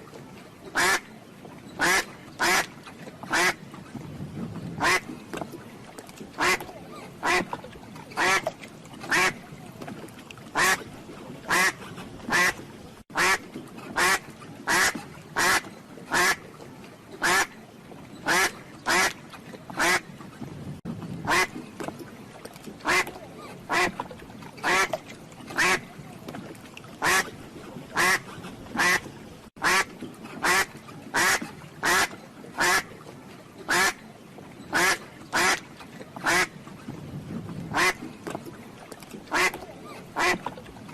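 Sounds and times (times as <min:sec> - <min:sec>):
duck quacking: 0:01.8 - 0:02.6, 0:11.5 - 0:12.6, 0:13.2 - 0:13.4, 0:14.0 - 0:16.4, 0:22.9 - 0:23.1, 0:27.0 - 0:27.3, 0:28.0 - 0:28.2, 0:28.8 - 0:29.0, 0:29.6 - 0:32.8, 0:37.8 - 0:38.0, 0:40.2 - 0:40.4.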